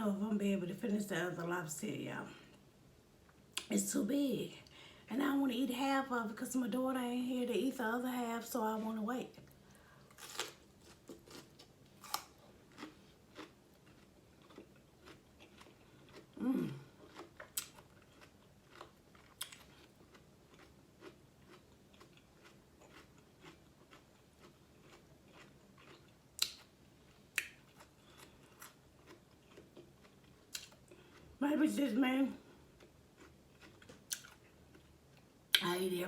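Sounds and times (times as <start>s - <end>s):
person chewing: 9.4s - 31.4s, 32.4s - 35.3s.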